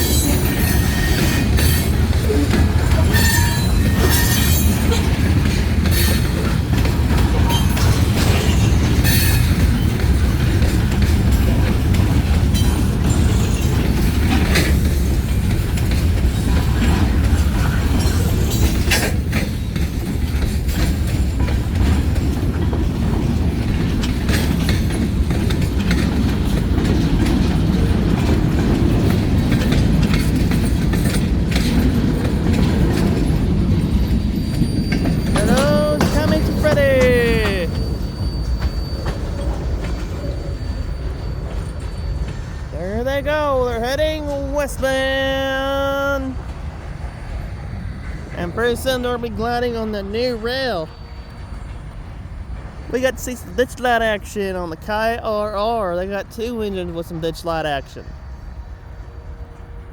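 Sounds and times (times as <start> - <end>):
wheel squeal: 0.0 - 6.4, 7.1 - 10.2, 33.1 - 42.8
wheels clicking over rail joints: 0.0 - 47.5
freight train rumbling past: 0.0 - 59.9.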